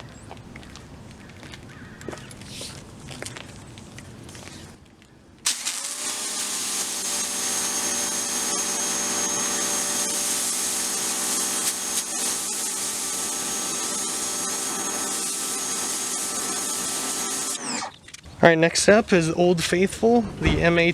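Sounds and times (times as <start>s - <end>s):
spray hissing: 5.5s - 17.7s
pressure washer motor and pump hum: 5.5s - 18.0s.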